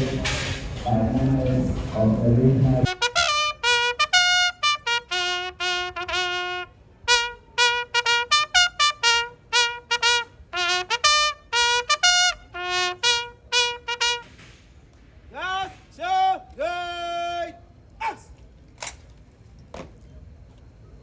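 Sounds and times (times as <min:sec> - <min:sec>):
bugle call: 0:00.0 - 0:14.6.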